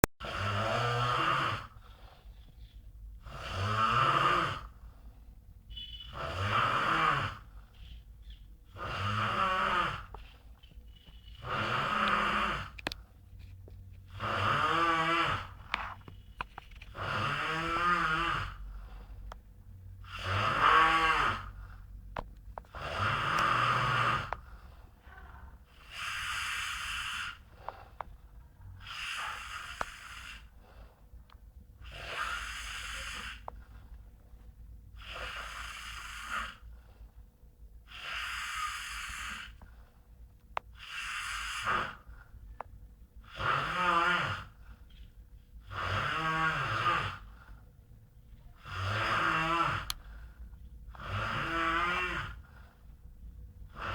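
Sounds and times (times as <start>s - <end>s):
man snoring: 0.2s - 1.9s, 3.2s - 4.8s, 6.1s - 7.5s, 8.7s - 10.2s, 11.4s - 12.8s, 14.1s - 16.0s, 16.9s - 18.7s, 20.0s - 21.8s, 22.7s - 24.4s, 25.7s - 27.9s, 28.8s - 30.5s, 31.8s - 33.6s, 35.0s - 36.7s, 37.9s - 39.6s, 40.8s - 42.1s, 43.2s - 44.6s, 45.6s - 47.4s, 48.6s - 50.0s, 51.0s - 52.5s, 53.7s - 53.9s.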